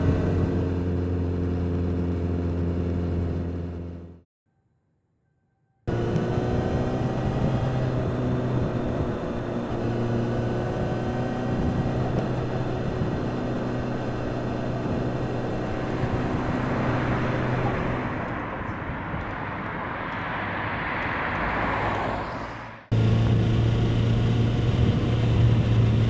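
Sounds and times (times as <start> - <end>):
motorcycle engine running: 22.9 - 26.0.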